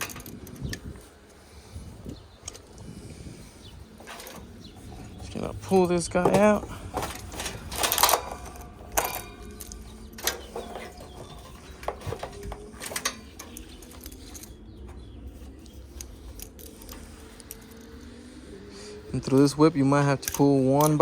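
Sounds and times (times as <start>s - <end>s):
knocks clicks and scrapes: 2.4s - 18.2s.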